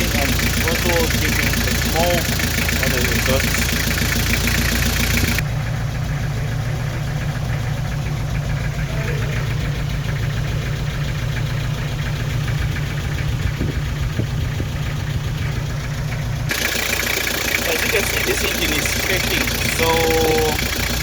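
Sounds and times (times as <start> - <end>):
diesel engine idling with knocking: 0.0 - 21.0.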